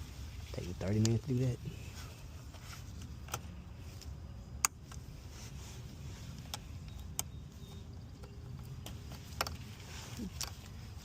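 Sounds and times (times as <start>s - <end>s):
low background rumble: 0.0s - 11.0s
sharp clicks of plastic parts: 2.9s - 5.0s, 6.3s - 9.7s.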